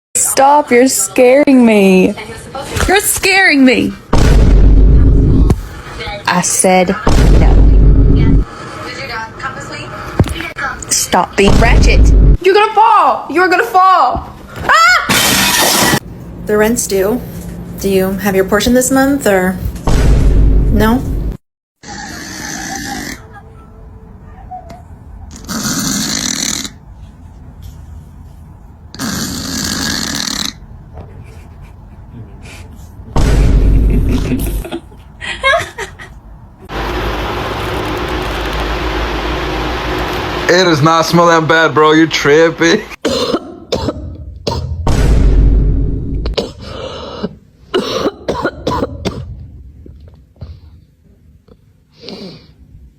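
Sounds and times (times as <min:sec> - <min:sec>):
loud rasping snores: 0:25.4 - 0:26.8, 0:28.9 - 0:30.6
person coughing: 0:43.0 - 0:44.8, 0:46.3 - 0:49.3.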